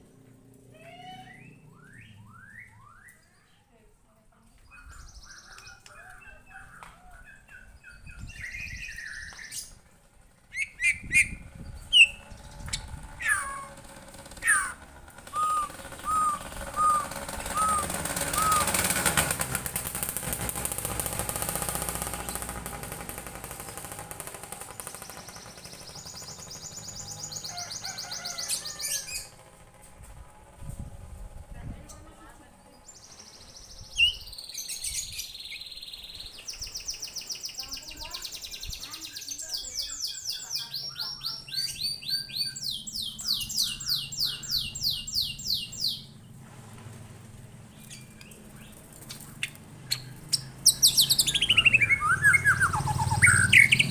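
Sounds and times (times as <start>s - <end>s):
bird trilling fast: 0.8s - 2.9s, 8.1s - 19.2s, 24.8s - 29.6s, 36.5s - 46.1s, 49.4s - 53.9s
songbird whistling: 0.8s - 3.4s, 10.5s - 13.7s, 14.4s - 18.8s, 38.6s - 46.1s, 49.9s - 53.9s.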